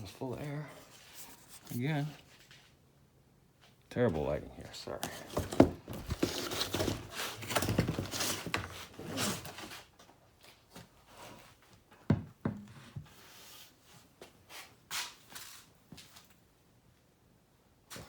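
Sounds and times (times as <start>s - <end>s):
packaging rustling: 4.9s - 9.5s.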